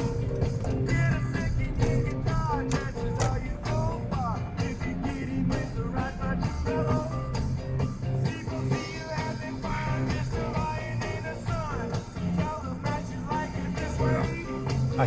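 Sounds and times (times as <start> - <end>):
guitar: 0.0 - 15.0
rock and roll song: 0.0 - 15.0
person singing: 8.2 - 15.0.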